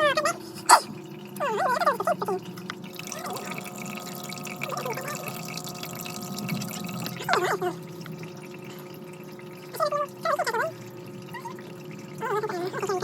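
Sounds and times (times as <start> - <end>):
water dripping and trickling: 0.0 - 13.0
steady hum: 0.6 - 10.2.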